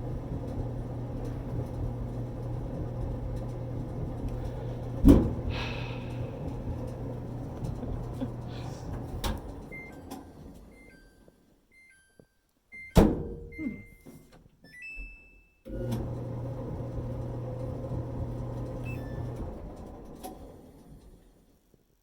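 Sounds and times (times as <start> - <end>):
dryer motor humming: 0.0 - 10.7, 15.7 - 20.7
control panel beeps: 10.7 - 14.1.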